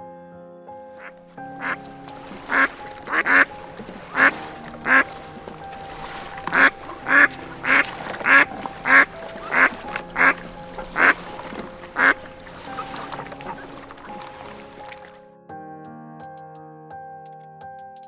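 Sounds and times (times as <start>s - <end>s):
background music: 0.0s - 18.0s
duck quacking: 1.0s - 1.9s, 2.5s - 5.2s, 6.2s - 14.6s.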